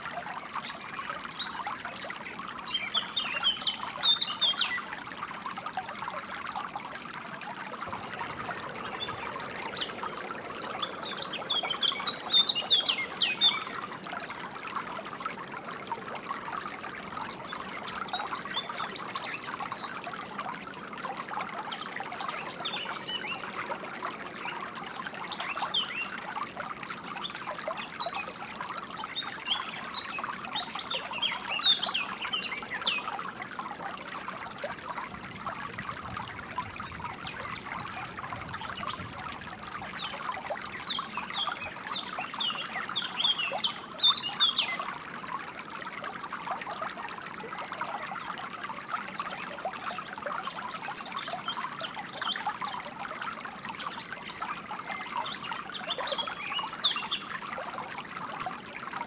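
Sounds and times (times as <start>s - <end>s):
stream trickling and babbling: 0.0s - 59.0s
songbirds chirping: 7.6s - 20.2s, 36.2s - 44.9s.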